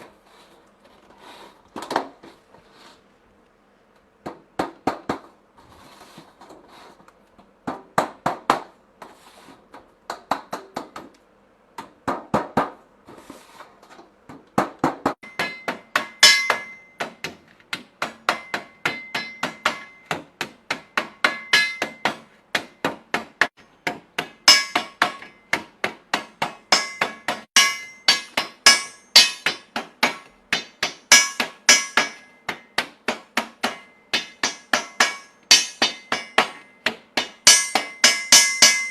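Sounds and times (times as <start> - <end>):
hammer striking metal: 15.2 - 17.4, 18.0 - 38.9.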